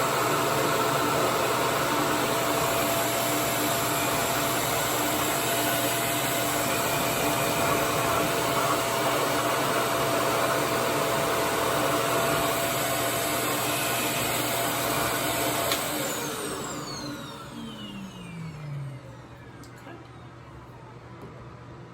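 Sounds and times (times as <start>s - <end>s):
hair dryer running: 0.0s - 20.0s
motor winding down whine: 12.6s - 20.8s.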